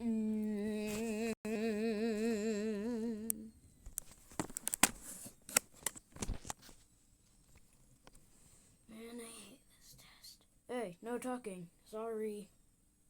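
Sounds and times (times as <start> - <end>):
person humming: 0.0 - 3.6.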